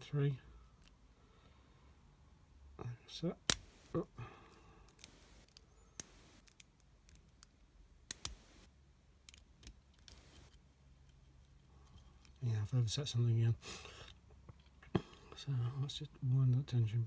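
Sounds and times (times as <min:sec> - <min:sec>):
lock pick clicking in padlock: 0:08.1 - 0:08.5.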